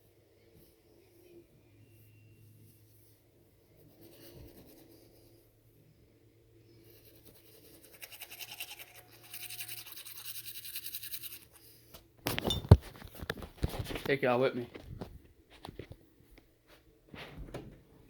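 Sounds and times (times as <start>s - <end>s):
toothbrush scrubbing teeth: 7.0s - 11.6s.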